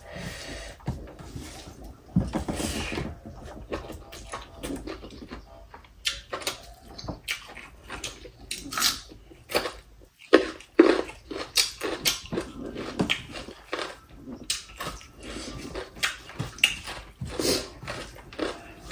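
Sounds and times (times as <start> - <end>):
wet chewing: 3.5 - 18.9.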